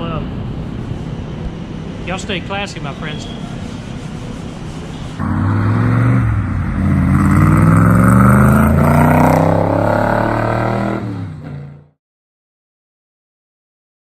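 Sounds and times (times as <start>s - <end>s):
car engine revving: 5.2s - 11.9s.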